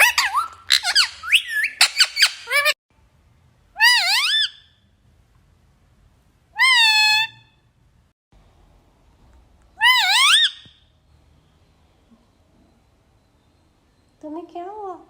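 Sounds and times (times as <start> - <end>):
parrot chirps and squeaks: 0.0 - 2.8, 3.8 - 4.7, 6.6 - 7.5, 9.8 - 10.9
parrot high calls: 0.0 - 2.8, 3.8 - 4.8, 6.6 - 7.6, 9.8 - 10.8.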